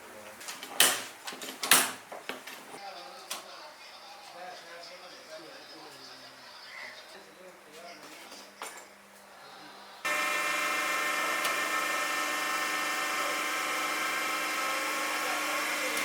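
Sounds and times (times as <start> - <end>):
machine motor whining: 10.1 - 16.0.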